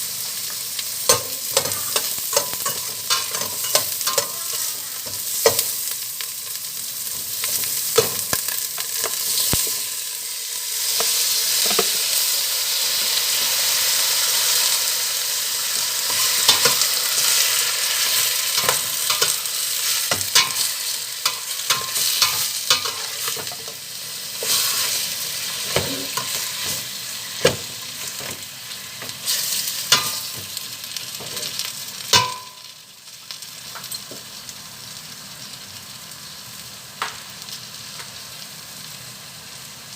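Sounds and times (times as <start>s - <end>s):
food sizzling in a frying pan: 0.0s - 39.9s.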